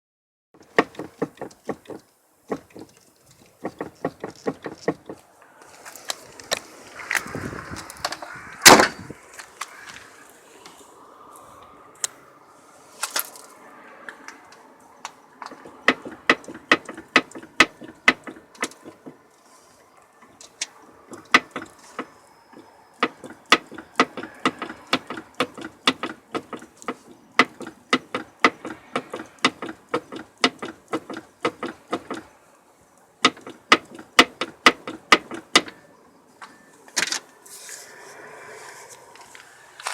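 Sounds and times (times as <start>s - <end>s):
steering rack clunking: 0.6s - 5.3s, 15.5s - 19.3s, 20.2s - 32.3s, 33.2s - 37.3s.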